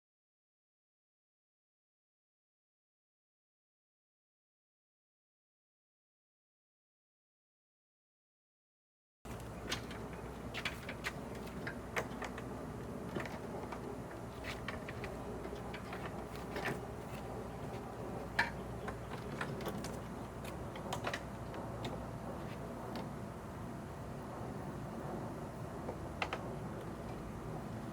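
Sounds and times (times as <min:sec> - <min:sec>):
low steady hum: 0:09.3 - 0:27.9.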